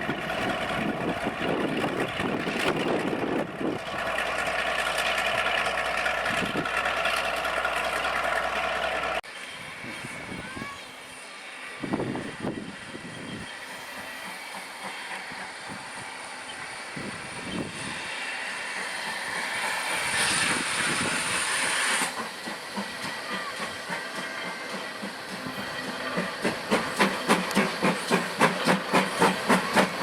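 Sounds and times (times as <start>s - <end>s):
steam hissing: 0.1s - 30.0s
train wheels clattering over rail joints: 18.7s - 30.0s.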